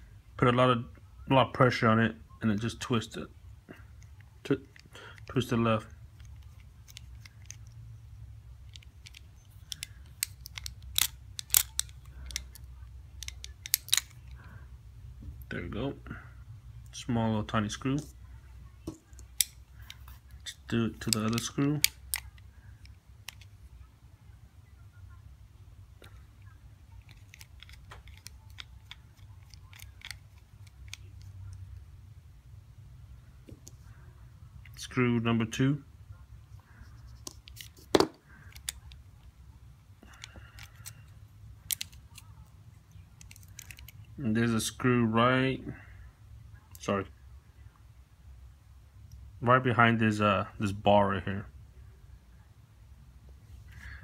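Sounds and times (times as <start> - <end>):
low steady hum: 0.0 - 54.0
metal clicks and scrapes: 8.7 - 14.4, 27.0 - 31.3, 43.2 - 44.0.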